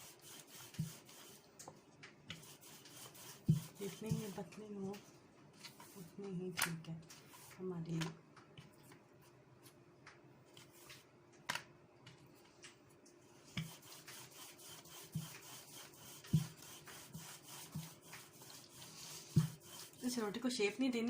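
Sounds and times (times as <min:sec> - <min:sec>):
rolling pin rubbing dough: 0:00.0 - 0:01.4, 0:02.3 - 0:04.6, 0:13.5 - 0:20.3.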